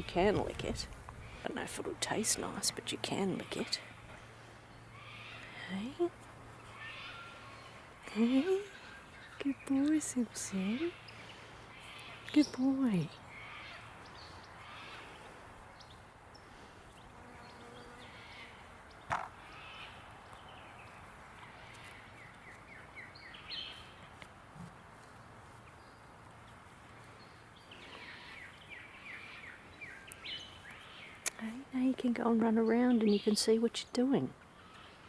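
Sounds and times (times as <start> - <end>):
low steady background hiss: 0.0 - 35.0
bird calls: 3.3 - 24.1, 27.0 - 31.3.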